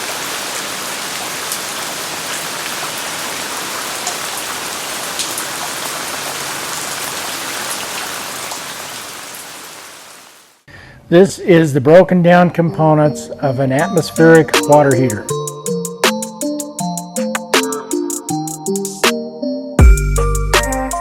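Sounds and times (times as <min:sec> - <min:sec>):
falling water hiss: 0:00.0 - 0:10.7.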